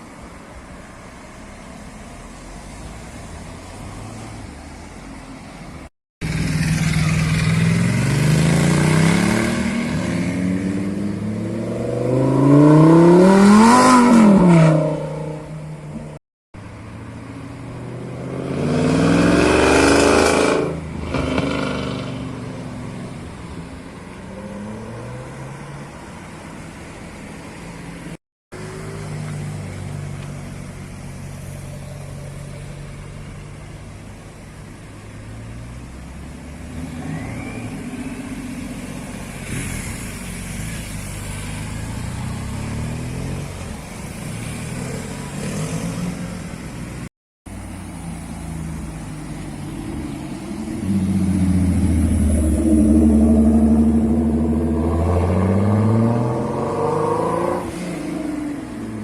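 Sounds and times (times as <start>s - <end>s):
car engines driving past: 0.0s - 59.0s
engine revving: 6.2s - 15.5s, 17.8s - 22.3s, 49.6s - 58.8s.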